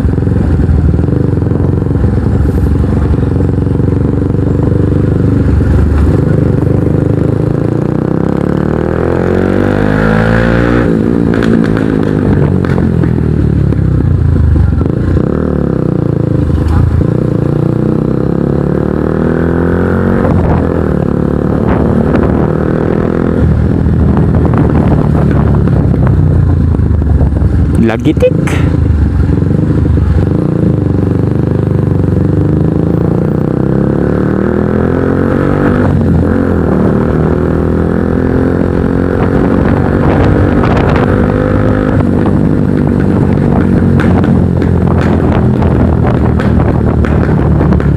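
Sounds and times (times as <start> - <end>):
motorcycle engine accelerating: 0.0 - 47.9
wind buffeting microphone: 19.9 - 33.9, 35.2 - 47.9.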